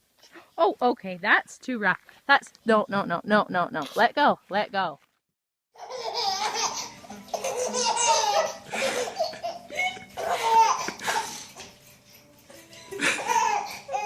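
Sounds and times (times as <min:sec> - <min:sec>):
baby laughing: 0:05.8 - 0:11.7, 0:13.0 - 0:14.0.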